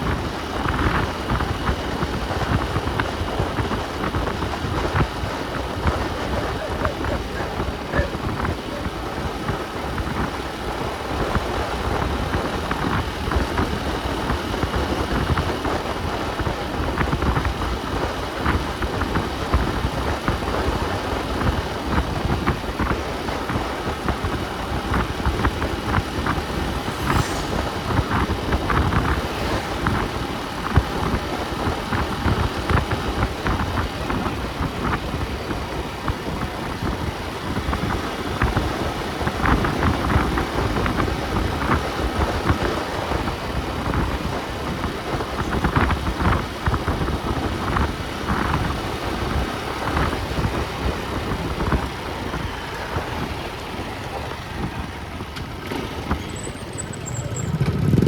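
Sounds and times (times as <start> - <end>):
car engine and road noise: 0.0 - 58.0
falling high-pitched whine: 26.4 - 30.6.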